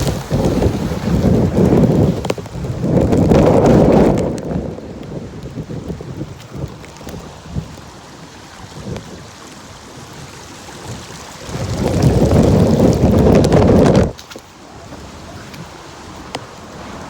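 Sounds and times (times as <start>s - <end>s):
heavy rain hissing: 4.4s - 13.9s, 14.6s - 17.0s.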